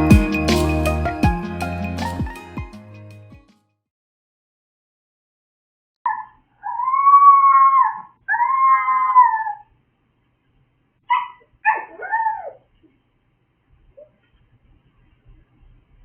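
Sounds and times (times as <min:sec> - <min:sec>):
dog yipping: 0:06.1 - 0:09.7, 0:11.1 - 0:12.7
small dog howling: 0:06.1 - 0:09.7, 0:11.1 - 0:12.6.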